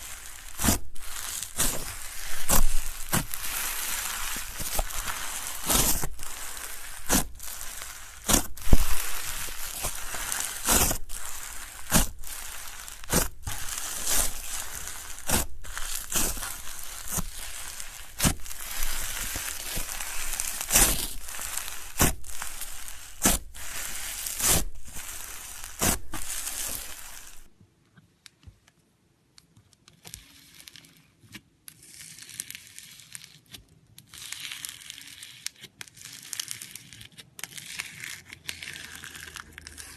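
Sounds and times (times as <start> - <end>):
crackly crunching with sharp pops: 0.0 - 27.5
slime being squished by hand: 0.0 - 27.5.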